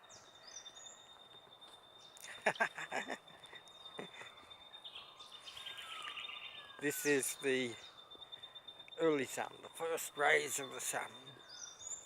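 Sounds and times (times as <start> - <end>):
bird trill: 0.0 - 12.0
birds chirping: 0.0 - 12.0.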